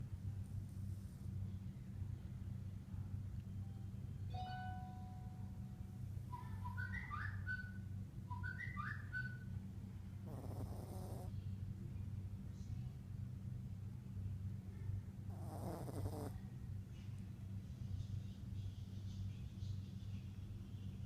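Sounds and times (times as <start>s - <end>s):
steady low hum: 0.0s - 21.0s
dog snoring with nasal whistles: 10.3s - 11.3s, 15.3s - 16.3s.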